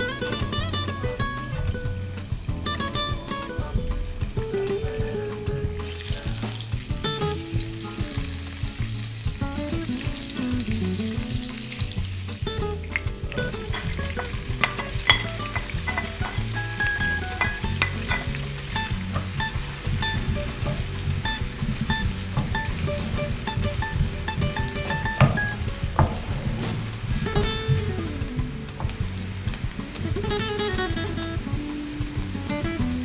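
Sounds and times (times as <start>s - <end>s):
food sizzling in a pan: 0.0s - 33.0s
utensil stirring clicks: 12.9s - 29.6s.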